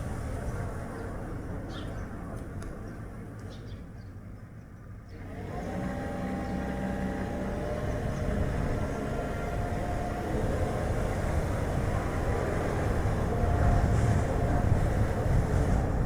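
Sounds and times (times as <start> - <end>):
faint car engine hum: 0.0 - 16.0
road and wind noise: 0.0 - 16.0.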